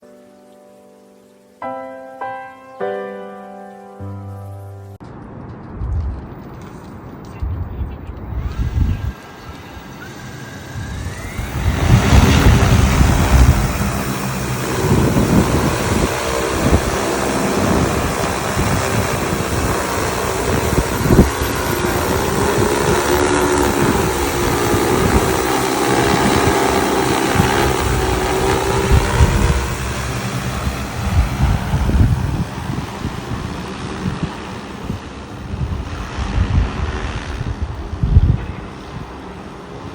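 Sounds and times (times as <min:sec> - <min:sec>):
rotor wash buffeting microphone: 0:04.9 - 0:39.9
drone propellers whining: 0:08.1 - 0:39.9.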